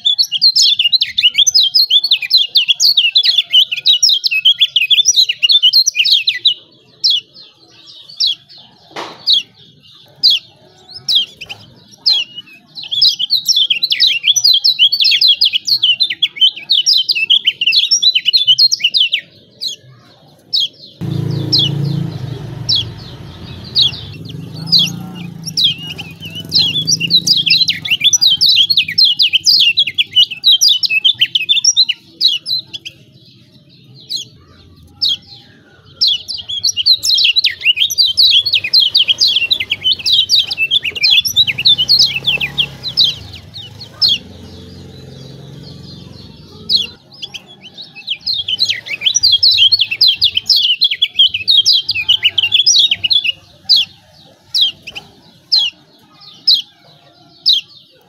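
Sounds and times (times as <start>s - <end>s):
bird chattering call: 20.6s - 33.2s, 34.0s - 55.8s.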